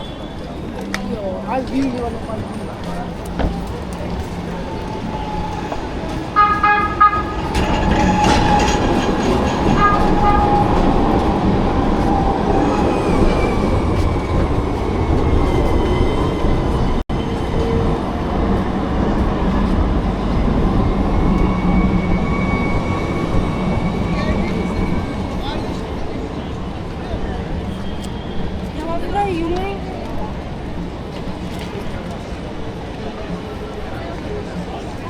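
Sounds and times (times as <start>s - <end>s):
tram wheels rumbling on rails: 0.0s - 35.0s
tram warning signal: 2.7s - 29.1s.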